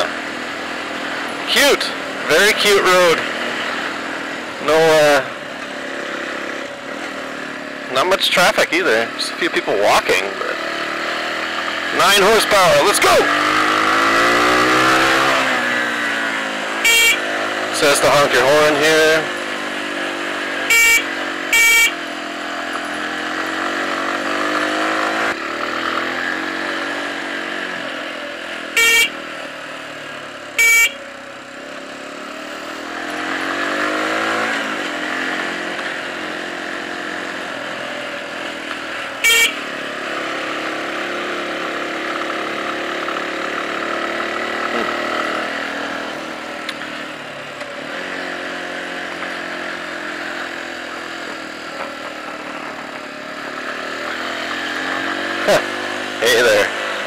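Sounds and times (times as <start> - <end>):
small motorcycle engine climbing: 0.0 - 57.0
motorcycle horn beeps: 16.6 - 17.7, 20.6 - 22.1, 28.6 - 29.4, 30.6 - 31.2, 39.2 - 40.0.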